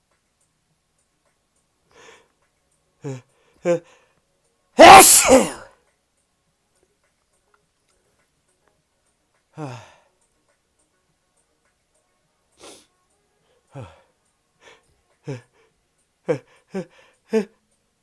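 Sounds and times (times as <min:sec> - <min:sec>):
breathy puffs: 0:04.8 - 0:05.6
person sneezing: 0:04.8 - 0:05.6.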